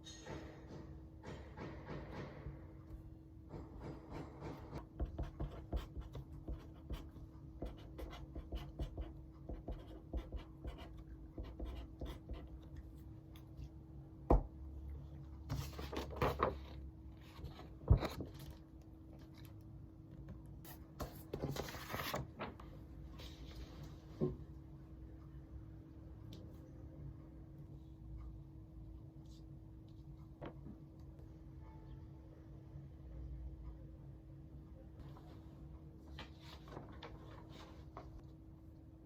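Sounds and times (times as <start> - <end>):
faint steady hum: 4.7 - 39.0
pen scratching on paper: 4.8 - 12.6.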